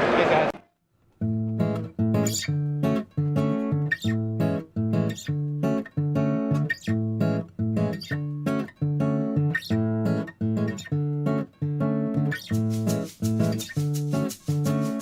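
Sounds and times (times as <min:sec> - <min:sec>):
strummed acoustic guitar music: 0:01.2 - 0:15.0.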